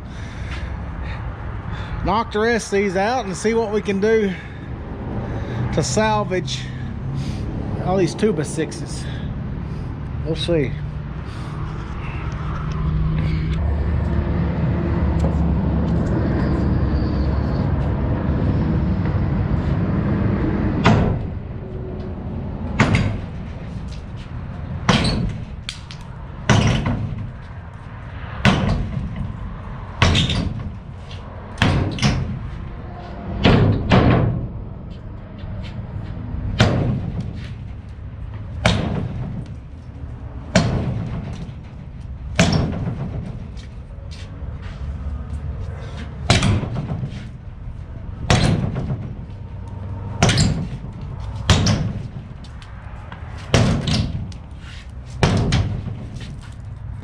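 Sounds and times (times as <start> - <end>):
steady low rumble: 0.0 - 57.0
wood-on-wood impacts: 20.8 - 21.4, 22.6 - 32.6, 36.5 - 39.9, 40.5 - 43.7, 46.0 - 47.4, 48.2 - 56.7.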